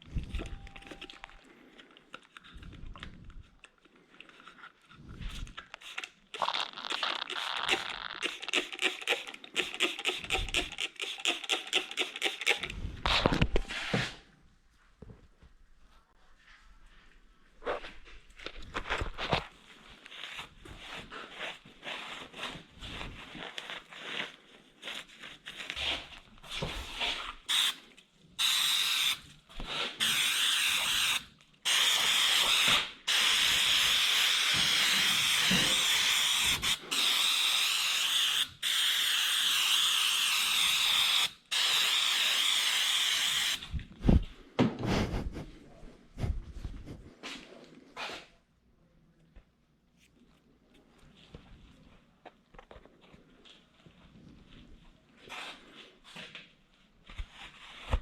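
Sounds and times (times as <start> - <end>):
aerosol can hissing: 5.8 - 12.7, 27.5 - 27.8, 28.4 - 29.2, 30.0 - 43.6
rubbing and knocking on surface: 44.0 - 47.3.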